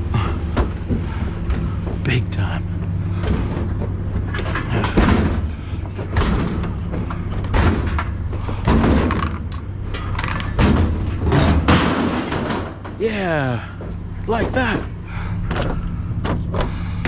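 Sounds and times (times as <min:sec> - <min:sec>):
steady low hum: 0:00.0 - 0:17.0
scrap metal thumping and clattering: 0:03.1 - 0:13.0.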